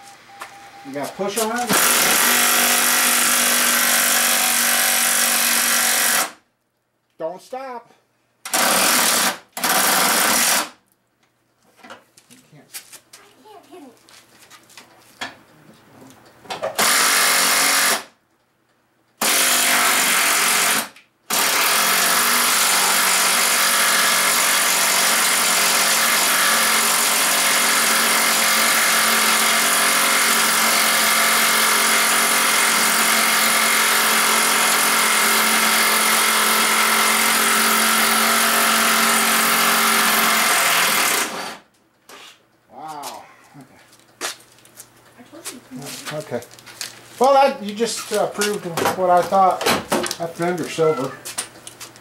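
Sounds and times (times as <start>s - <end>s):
impact driver running: 1.4s - 6.4s, 8.4s - 10.8s, 16.8s - 18.2s, 19.2s - 41.7s.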